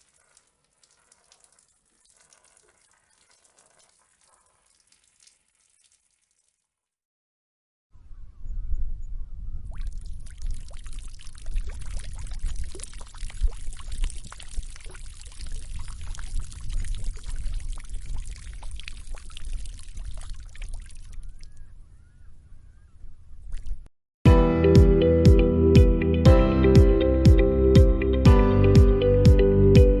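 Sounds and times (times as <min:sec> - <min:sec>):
person urinating: 0:00.0 - 0:06.8, 0:09.9 - 0:21.2.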